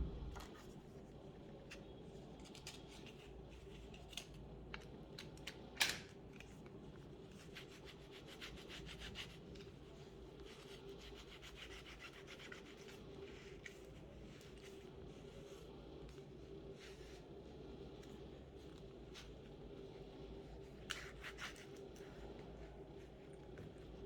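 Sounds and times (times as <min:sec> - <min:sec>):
steady low hum: 0:00.0 - 0:02.0, 0:12.7 - 0:24.0.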